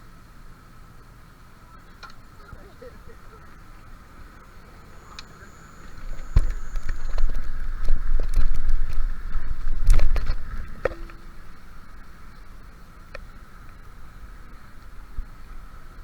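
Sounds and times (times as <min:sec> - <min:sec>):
bicycle riding rumble: 0:00.0 - 0:16.0
bicycle knocks and rattles: 0:06.0 - 0:11.6.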